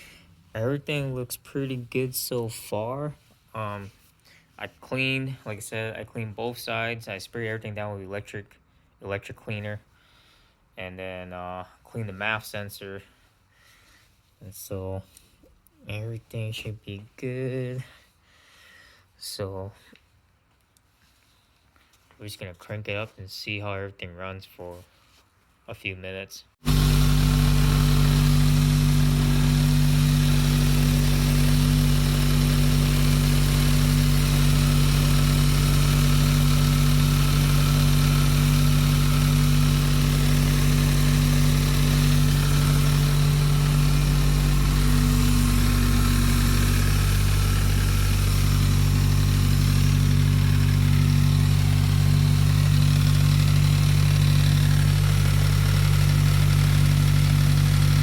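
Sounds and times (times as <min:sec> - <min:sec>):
car engine idling: 0:26.6 - 0:58.0.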